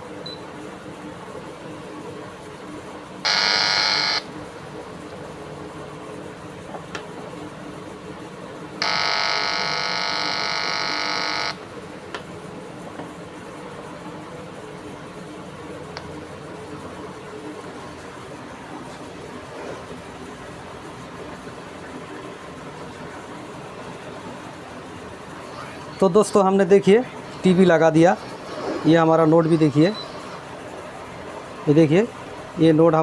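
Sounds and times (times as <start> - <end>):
electronic buzzer tones: 3.2 - 4.3, 8.8 - 11.6.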